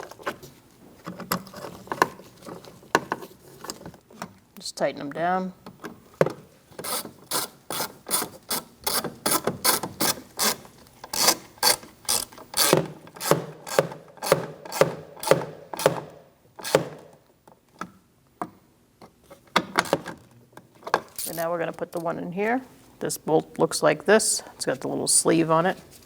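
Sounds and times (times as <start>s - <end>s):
hand ratchet clicking: 8.9s - 15.3s.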